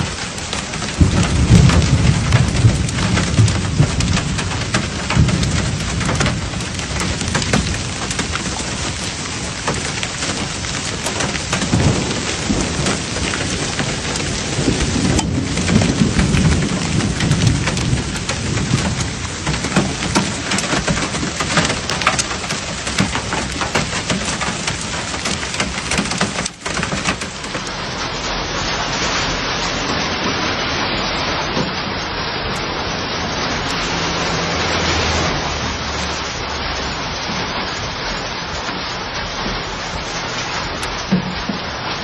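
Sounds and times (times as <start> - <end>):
heavy rain: 0.0 - 42.0
sharp raindrop strikes: 0.0 - 42.0.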